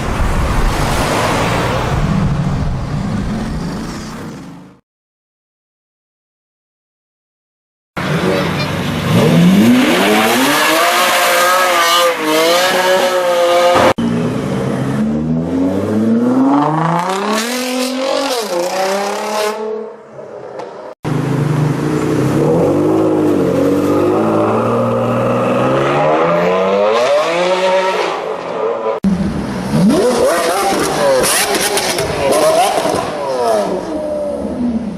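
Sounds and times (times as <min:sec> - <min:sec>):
car engine revving hard: 0:08.0 - 0:14.0, 0:29.6 - 0:33.7.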